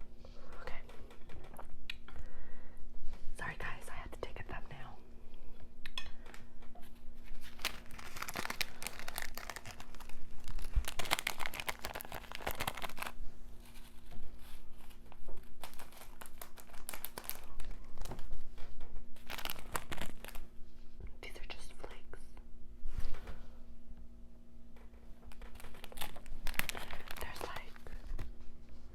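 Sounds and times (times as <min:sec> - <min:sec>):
packaging crinkling and tearing: 0:07.2 - 0:18.4, 0:19.2 - 0:20.5, 0:25.2 - 0:28.4.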